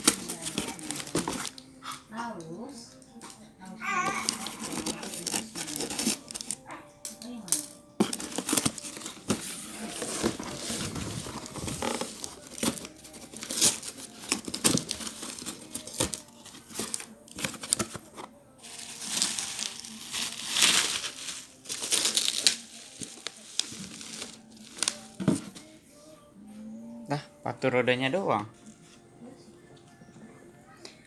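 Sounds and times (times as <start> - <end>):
packaging crinkling and rustling: 0.0 - 1.6, 4.0 - 6.6, 8.0 - 25.6
packaging tearing: 0.0 - 1.6, 4.0 - 6.6, 8.0 - 25.4.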